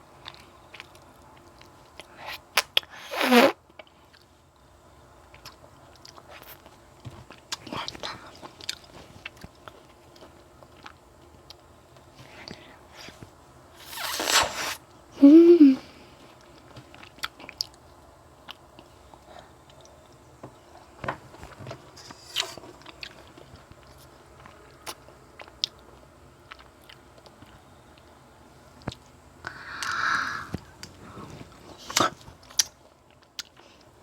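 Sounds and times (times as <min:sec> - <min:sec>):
person humming: 0:15.2 - 0:16.0, 0:29.5 - 0:30.6
breathy rush: 0:29.5 - 0:31.2.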